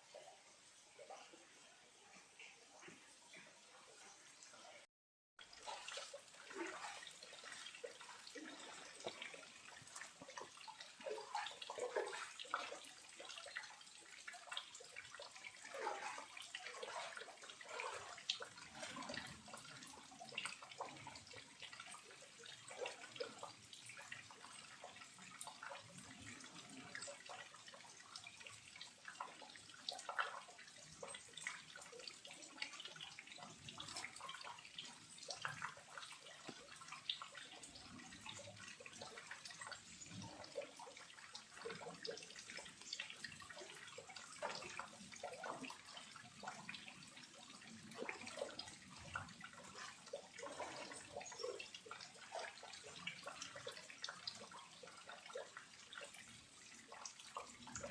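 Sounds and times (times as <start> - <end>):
water dripping and splashing: 0.0 - 57.9
rush of water: 5.5 - 28.5.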